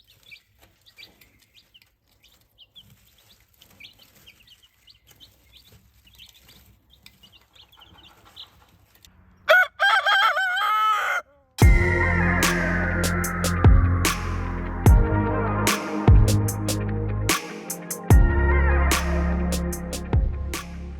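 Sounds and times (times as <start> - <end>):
baby chicks peeping: 0.1 - 8.7
rooster crowing: 9.5 - 13.1
music with falling sweep: 11.6 - 20.9.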